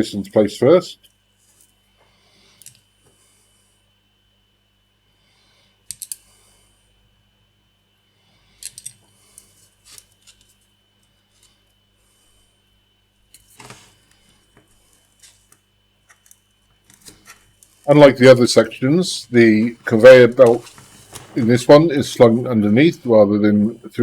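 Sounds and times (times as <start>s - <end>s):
plastic parts clicking: 5.9s - 6.2s, 8.6s - 9.0s.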